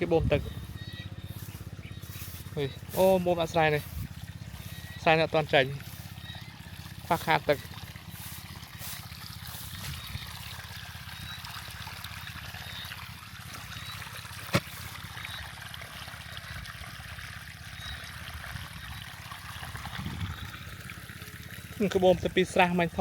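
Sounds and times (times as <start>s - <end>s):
low hum: 0.0s - 15.6s
water pouring and trickling: 0.0s - 23.0s.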